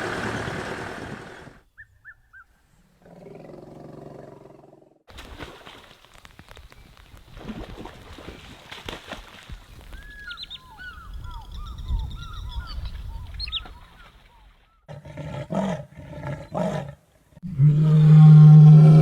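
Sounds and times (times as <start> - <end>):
lion roaring: 14.9 - 19.0.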